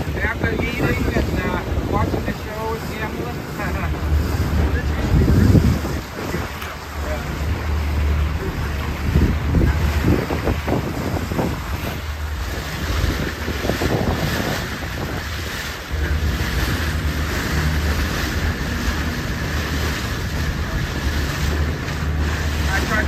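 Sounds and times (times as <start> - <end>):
boat engine humming: 0.0 - 23.0
water rushing along hull: 0.0 - 23.0
wind buffeting microphone: 0.0 - 23.0.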